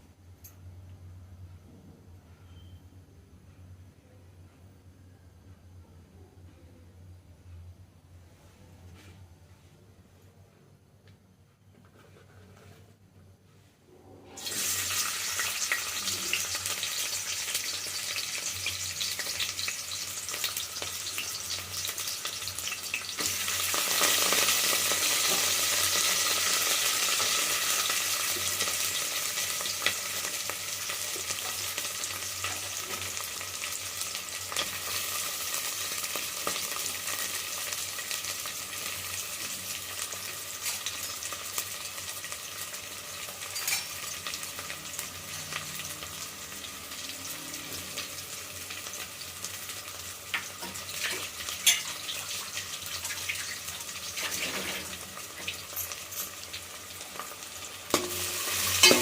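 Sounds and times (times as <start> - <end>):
food sizzling in oil: 14.4 - 59.0.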